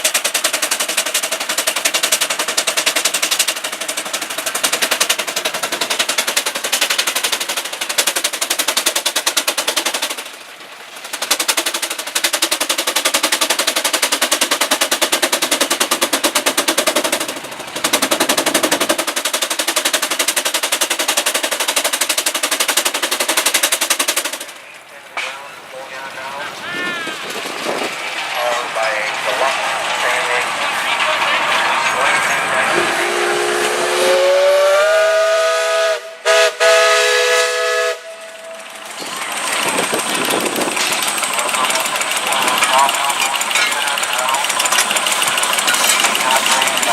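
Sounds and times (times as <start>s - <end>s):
steam engine exhaust chuffing: 0.0s - 46.9s
steam hiss: 27.1s - 46.9s
steam whistle blast: 32.7s - 38.6s.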